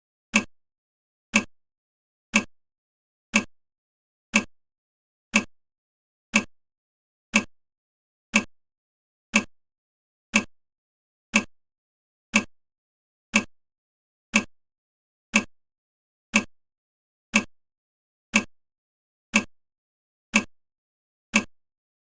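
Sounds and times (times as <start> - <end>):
timer ticking: 0.3 - 0.5, 1.3 - 1.5, 2.3 - 2.5, 3.3 - 3.6, 4.3 - 4.5, 5.3 - 5.6, 6.3 - 6.6, 7.3 - 7.6, 8.3 - 8.5, 9.3 - 9.6, 10.3 - 10.5, 11.3 - 11.6, 12.3 - 12.6, 13.3 - 13.6, 14.3 - 14.5, 15.3 - 15.5, 16.3 - 16.6, 17.3 - 17.5, 18.3 - 18.6, 19.3 - 19.6, 20.3 - 20.6, 21.3 - 21.6.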